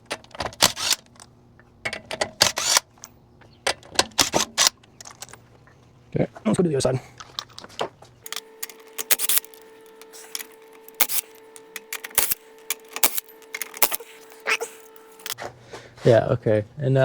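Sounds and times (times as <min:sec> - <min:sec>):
faint steady hum: 0:08.0 - 0:16.0
metallic clinks of hand tools: 0:08.3 - 0:15.4.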